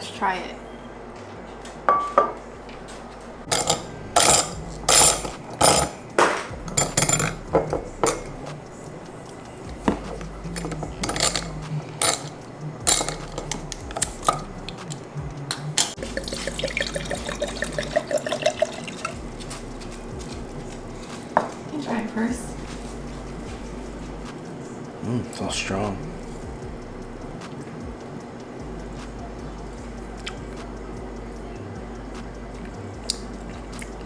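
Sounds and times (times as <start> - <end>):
glass clinking: 1.9 - 2.4, 3.5 - 21.7
wine pouring into a glass: 16.0 - 19.2.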